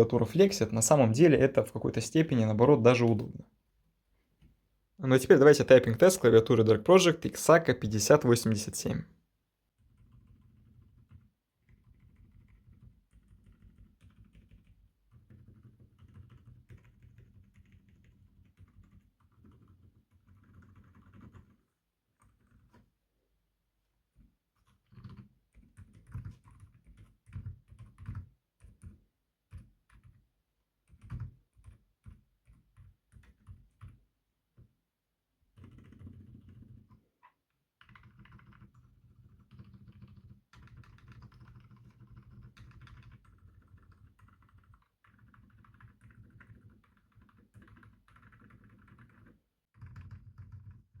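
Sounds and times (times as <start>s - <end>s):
soft mechanical keyboard typing: 9.8s - 23.0s, 24.0s - 34.7s, 35.4s - 37.1s, 37.8s - 51.0s.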